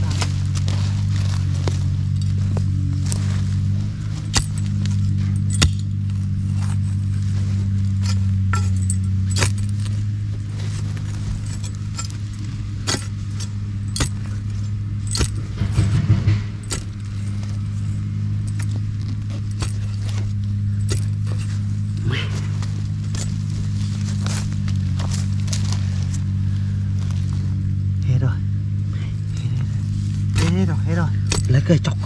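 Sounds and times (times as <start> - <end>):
digging tool scraping soil: 0.0 - 27.7, 28.9 - 32.0
steady low hum: 0.0 - 32.0
metallic clinks: 4.2 - 22.0.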